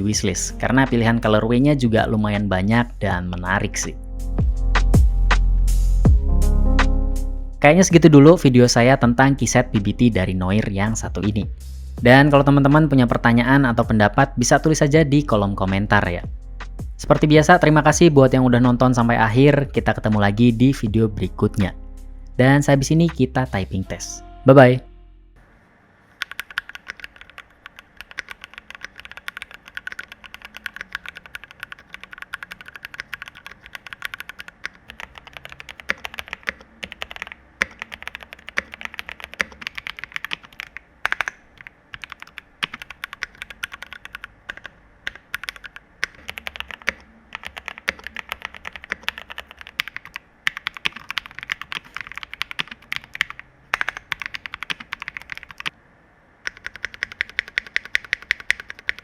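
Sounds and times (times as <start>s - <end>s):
mechanical keyboard typing: 26.2s - 55.7s, 56.5s - 59.0s.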